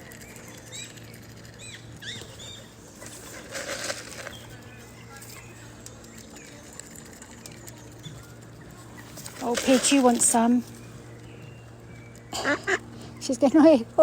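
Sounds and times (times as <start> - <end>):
bird wings flapping: 0.0 - 11.0.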